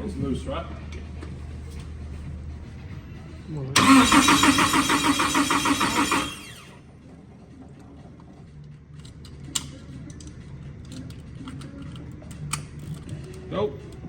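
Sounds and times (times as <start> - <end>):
starter motor cranking engine: 3.8 - 6.8.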